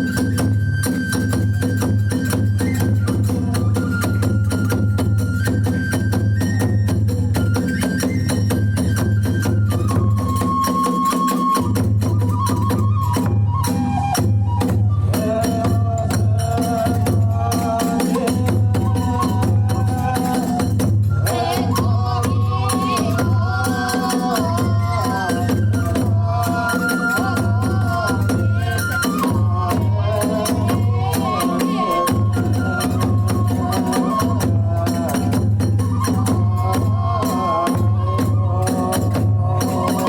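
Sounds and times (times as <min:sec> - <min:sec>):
bamboo flute melody: 0:00.0 - 0:40.0
drum beating: 0:01.3 - 0:40.0
small hand cymbals: 0:15.2 - 0:40.0.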